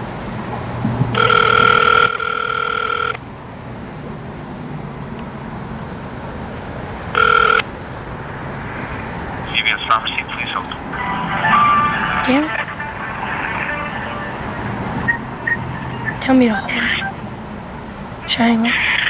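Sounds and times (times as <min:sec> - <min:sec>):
telephone ringback tone: 0:01.2 - 0:03.2, 0:07.1 - 0:07.7, 0:11.3 - 0:17.2.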